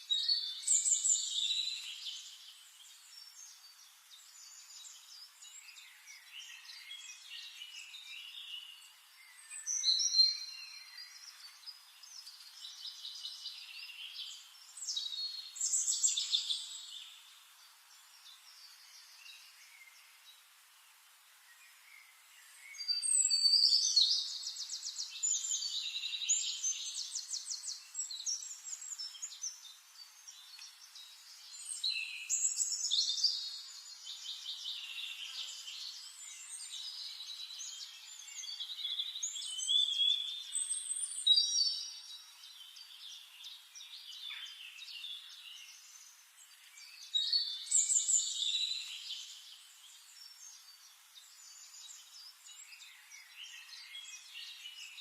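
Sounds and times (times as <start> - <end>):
songbirds trilling and chirping: 0.0 - 55.0.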